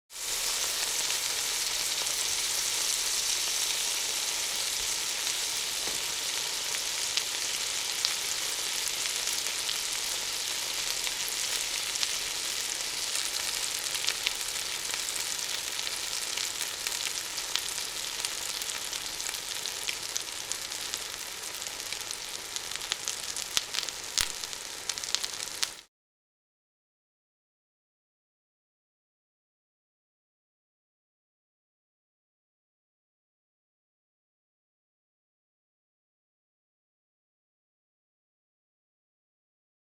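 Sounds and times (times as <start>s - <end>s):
food sizzling in a pan: 0.1s - 25.9s
oil popping and crackling: 21.2s - 25.8s.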